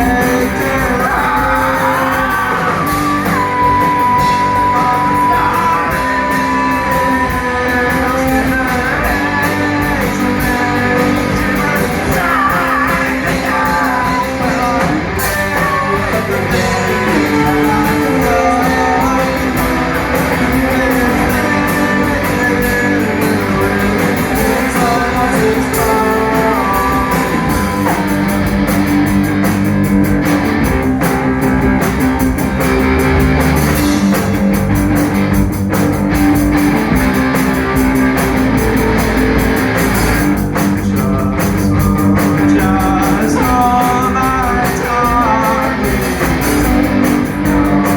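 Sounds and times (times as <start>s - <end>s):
person singing: 0.0s - 28.7s, 40.4s - 47.9s
electric guitars: 0.0s - 47.9s
rock band playing live: 0.0s - 47.9s.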